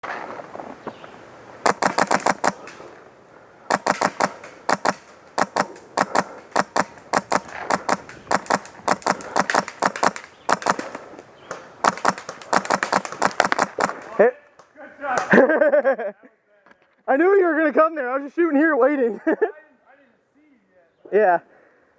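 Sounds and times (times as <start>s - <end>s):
airsoft gun firing bursts: 1.6s - 2.8s, 3.7s - 11.0s, 11.8s - 14.2s.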